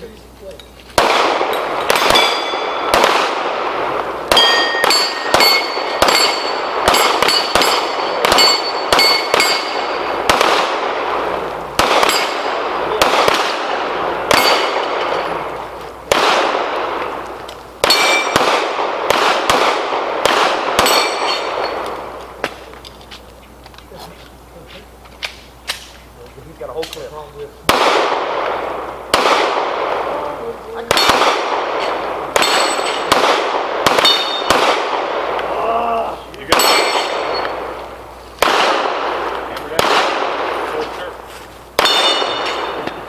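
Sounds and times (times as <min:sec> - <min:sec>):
pistol shots: 0:00.9 - 0:22.8, 0:26.8 - 0:35.6, 0:36.4 - 0:43.0
steel plates clanging: 0:04.4 - 0:10.1, 0:20.8 - 0:21.9, 0:32.4 - 0:33.1, 0:36.6 - 0:37.5, 0:41.8 - 0:42.8.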